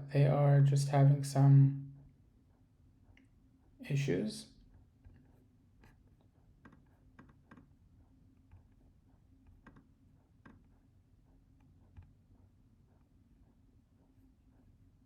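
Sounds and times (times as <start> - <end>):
computer mouse and keyboard clicks: 5.0 - 13.5.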